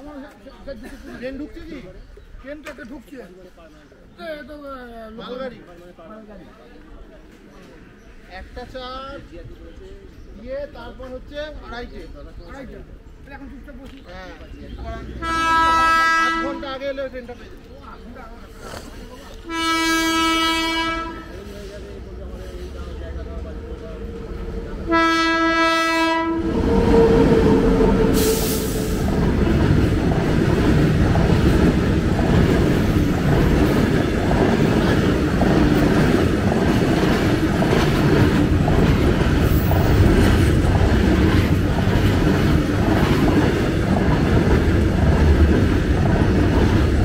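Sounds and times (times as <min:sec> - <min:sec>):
locomotive horn: 0:15.2 - 0:16.7, 0:19.5 - 0:21.5, 0:24.8 - 0:29.0
freight train wheels clattering: 0:26.6 - 0:47.0.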